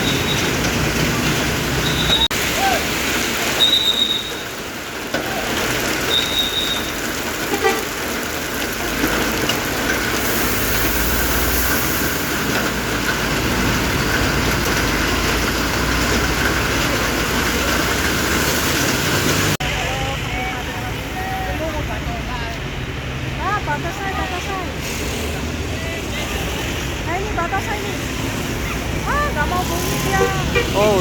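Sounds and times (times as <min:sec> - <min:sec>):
roadside traffic noise: 0:00.0 - 0:31.0
vehicle passing: 0:22.9 - 0:31.0.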